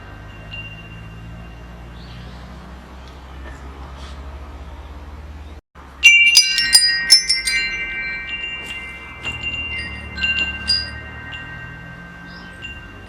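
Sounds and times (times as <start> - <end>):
metal wind chimes ringing: 0.0 - 2.6, 5.8 - 13.0.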